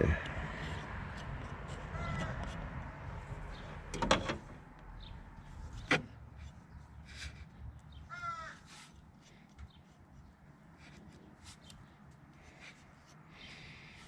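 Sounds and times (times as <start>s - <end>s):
crow cawing: 1.9s - 2.4s, 8.1s - 8.8s.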